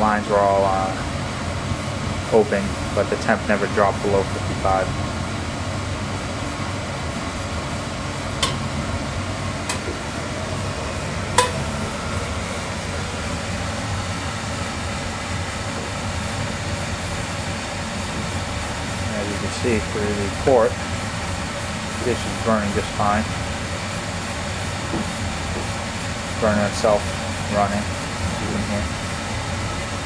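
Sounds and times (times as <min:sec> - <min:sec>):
oil furnace burner running: 0:00.0 - 0:30.0
sharp cracks from furnace: 0:08.2 - 0:09.0, 0:09.6 - 0:12.9.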